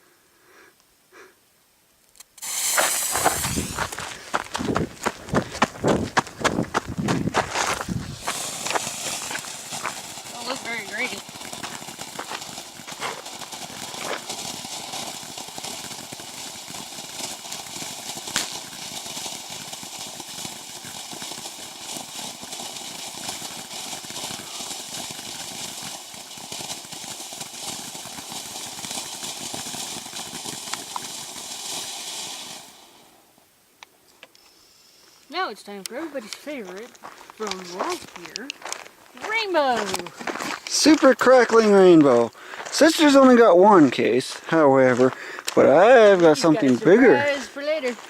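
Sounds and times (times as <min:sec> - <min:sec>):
firework pops: 0:02.1 - 0:33.0, 0:39.2 - 0:42.3
firework fountain hissing: 0:02.2 - 0:33.4, 0:34.4 - 0:48.0.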